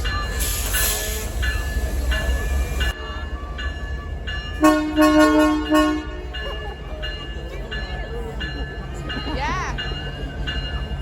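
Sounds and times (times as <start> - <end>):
diesel locomotive rumbling past: 0.0 - 11.0
train bell ringing: 0.0 - 11.0
air horn blasts: 4.6 - 6.2.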